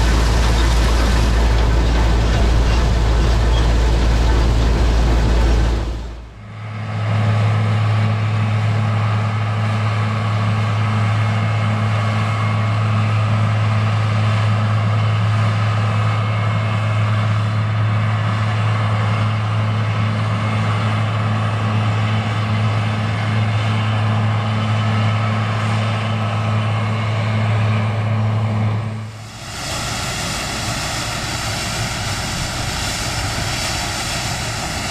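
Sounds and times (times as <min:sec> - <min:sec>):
combine harvester engine drone: 0:00.0 - 0:34.9.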